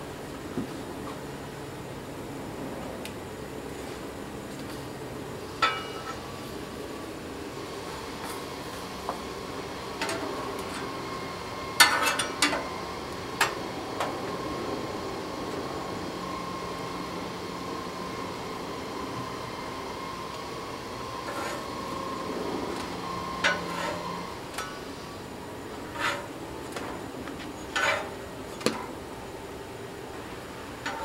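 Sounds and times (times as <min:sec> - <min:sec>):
background hum: 0:00.0 - 0:31.0
metal spatula scraping griddle: 0:11.8 - 0:12.7, 0:21.2 - 0:29.0, 0:30.8 - 0:31.0.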